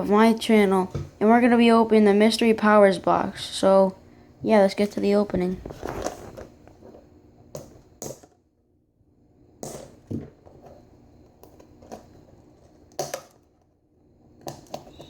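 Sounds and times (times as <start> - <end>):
box packaging crackling: 5.5 - 6.8.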